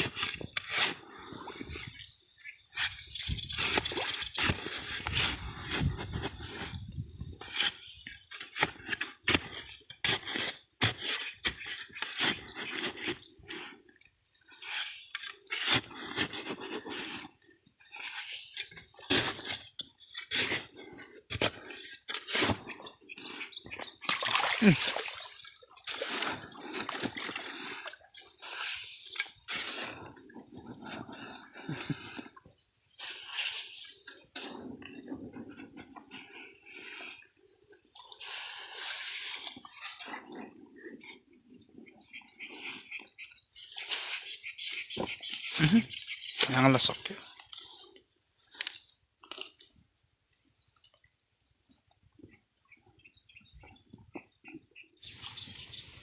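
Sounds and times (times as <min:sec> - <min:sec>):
hands scraping wet mud: 0:00.0 - 0:51.1
muddy water splashing: 0:02.7 - 0:06.8, 0:07.4 - 0:37.2, 0:37.8 - 0:49.7.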